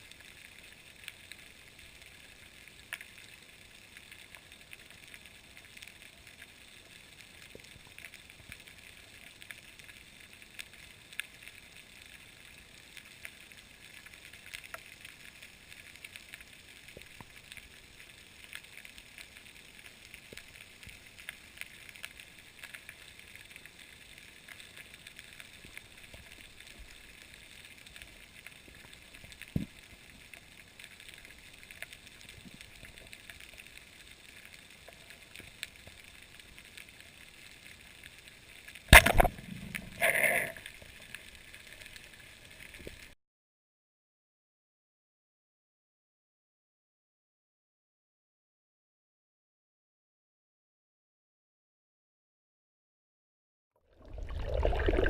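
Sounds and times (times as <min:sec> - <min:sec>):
faint underwater hiss: 0:00.0 - 0:43.2, 0:54.0 - 0:55.0
sharp underwater clicks: 0:38.8 - 0:43.1.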